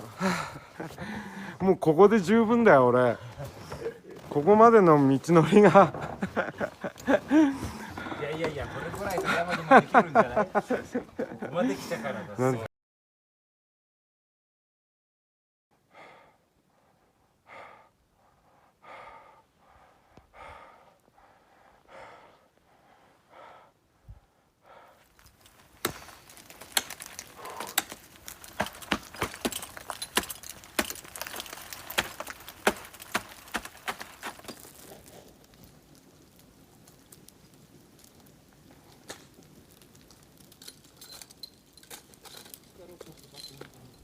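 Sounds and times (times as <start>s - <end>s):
person breathing hard: 0.1s - 1.6s, 15.8s - 25.2s, 27.2s - 28.0s
footsteps on hard snow and ice: 25.0s - 35.7s.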